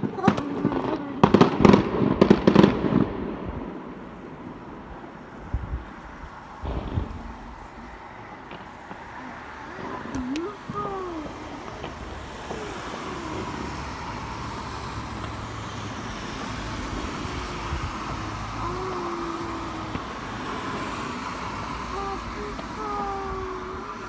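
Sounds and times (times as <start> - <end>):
outdoor rumble: 0.0 - 24.0
distant rising and falling calls: 6.4 - 24.0.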